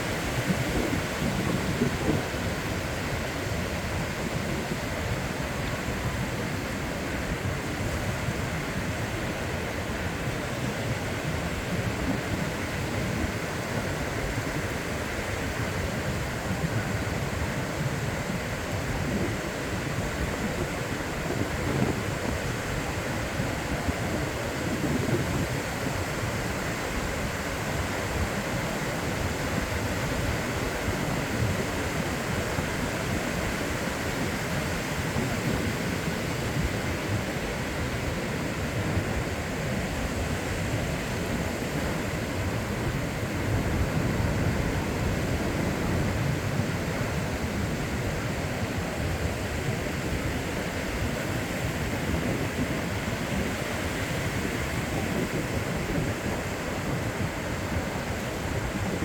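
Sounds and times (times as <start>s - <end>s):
ocean surf washing onto beach: 0.0s - 59.0s.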